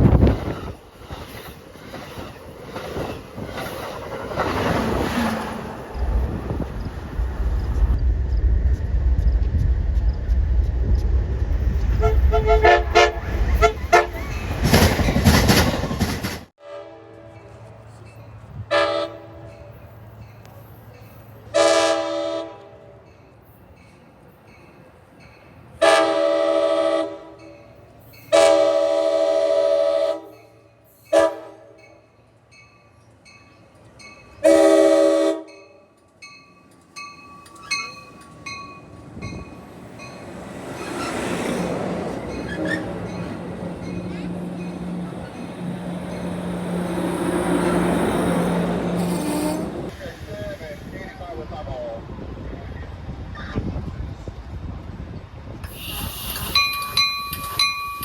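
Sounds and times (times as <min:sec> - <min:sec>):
train rumble: 0:00.0 - 0:58.0
train air horn blasts: 0:11.9 - 0:14.2, 0:16.6 - 0:17.6, 0:18.7 - 0:19.7, 0:21.5 - 0:22.9, 0:25.8 - 0:27.5, 0:28.3 - 0:30.4, 0:31.1 - 0:31.8, 0:34.4 - 0:35.6, 0:48.9 - 0:49.9, 0:55.7 - 0:56.7.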